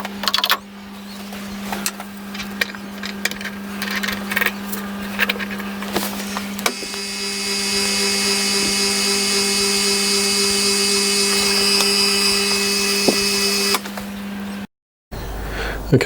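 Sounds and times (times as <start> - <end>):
constant low hum: 0.0 - 16.0
milling machine spindle whine: 6.2 - 14.7.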